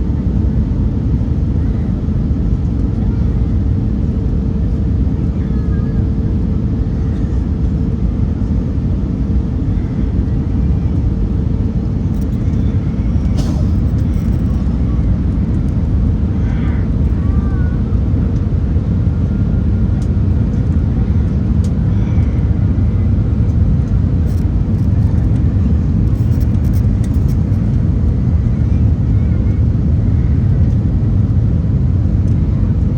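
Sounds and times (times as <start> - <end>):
jet engines rumbling: 0.0 - 32.9.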